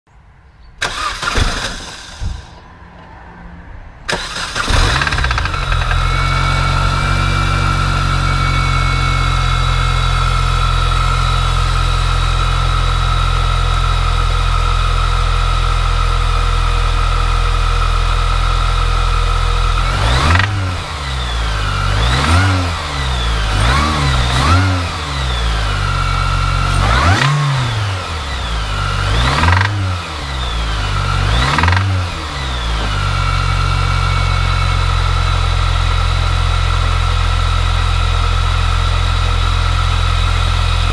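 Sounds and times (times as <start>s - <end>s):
engine revving: 0.8s - 2.6s, 4.1s - 14.4s, 18.2s - 35.6s, 40.0s - 40.9s
car engine starting and idling: 0.8s - 3.3s, 3.9s - 40.9s.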